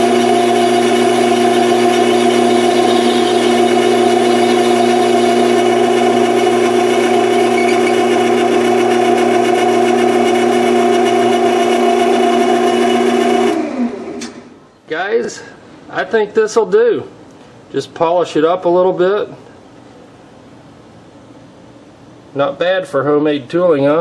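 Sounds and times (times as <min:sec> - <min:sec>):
metal lathe humming: 0:00.0 - 0:13.8.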